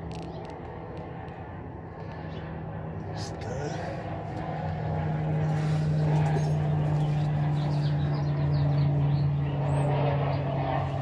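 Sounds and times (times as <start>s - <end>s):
low machine hum: 0.0s - 11.0s
small birds chirping: 5.4s - 10.5s.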